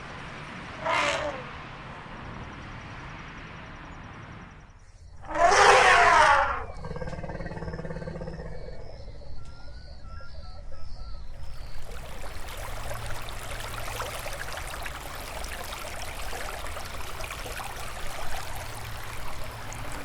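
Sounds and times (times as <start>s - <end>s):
outdoor background noise: 0.0s - 20.0s
elephant trumpeting: 0.8s - 1.4s, 5.2s - 6.7s.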